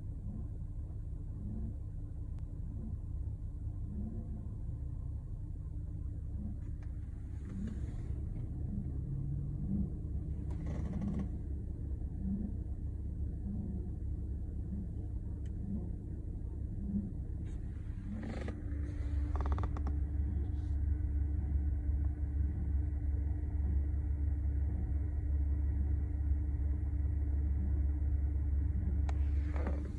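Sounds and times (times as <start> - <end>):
higher steady hum: 6.1 - 24.8.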